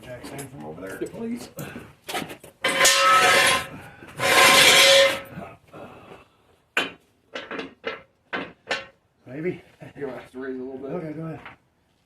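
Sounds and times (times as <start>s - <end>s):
metal stand scraping on concrete: 2.6s - 5.3s.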